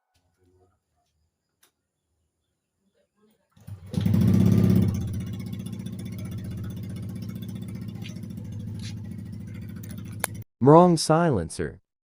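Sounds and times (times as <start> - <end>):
scooter engine idling: 3.6 - 10.4.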